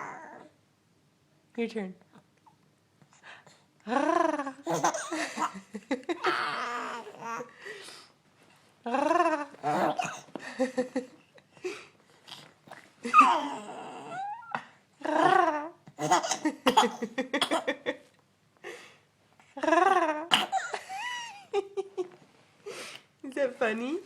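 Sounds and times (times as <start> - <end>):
baby making vocal noises: 0.0 - 0.6, 6.2 - 7.5, 9.6 - 10.2, 13.1 - 14.6.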